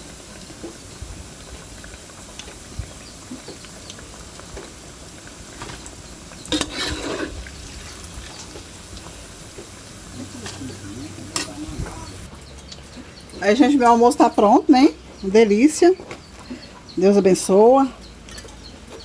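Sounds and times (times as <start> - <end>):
utensils clinking against pots: 5.6 - 8.7, 10.2 - 12.3.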